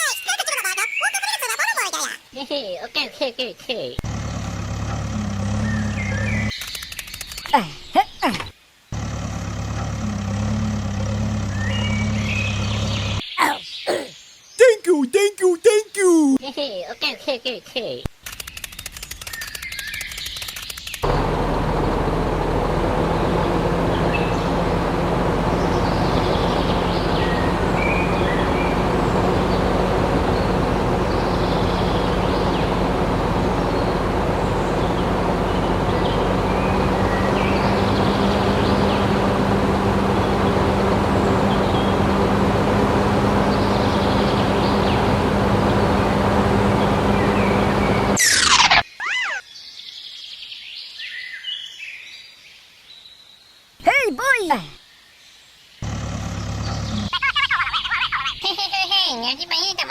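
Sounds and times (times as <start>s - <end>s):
faint bird chirps: 11.5s - 14.7s, 48.2s - 49.9s.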